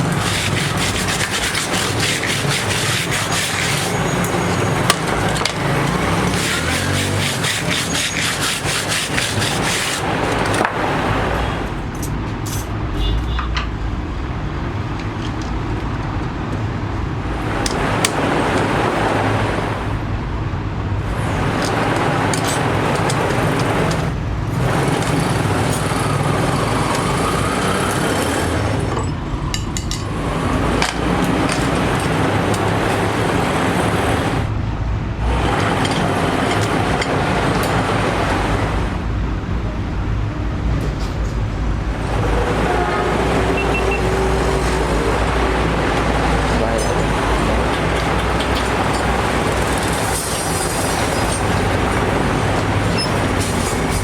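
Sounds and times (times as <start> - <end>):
rapid rubbing strokes: 0.0 - 10.6
mechanical noise: 40.8 - 54.0.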